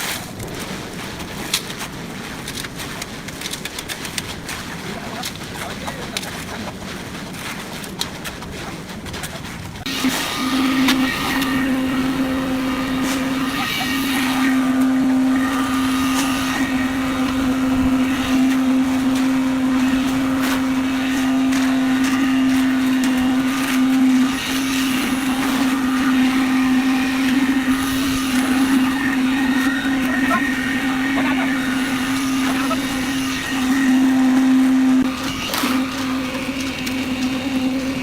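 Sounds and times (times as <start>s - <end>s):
machine humming: 9.4s - 38.0s.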